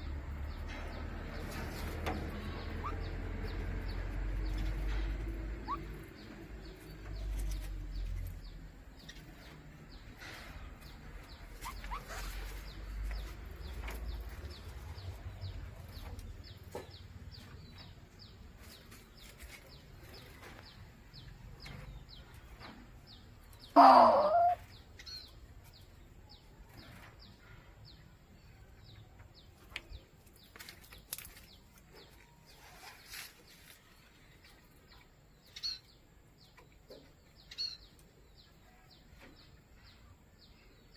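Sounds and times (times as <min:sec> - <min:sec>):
faint bird calls: 0:23.6 - 0:25.3
bird squawking harshly: 0:23.7 - 0:24.6.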